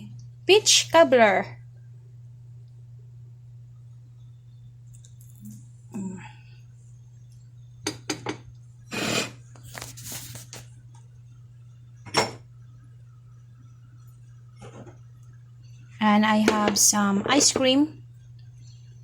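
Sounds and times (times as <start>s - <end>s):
low hum: 10.8s - 19.0s
utensils clinking on a dish: 12.1s - 12.4s.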